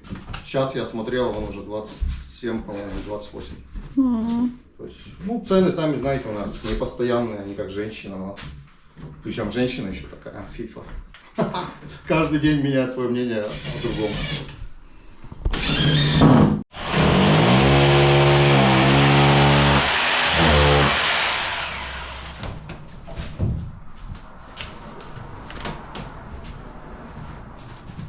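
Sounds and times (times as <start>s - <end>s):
power drill running: 15.6s - 22.6s.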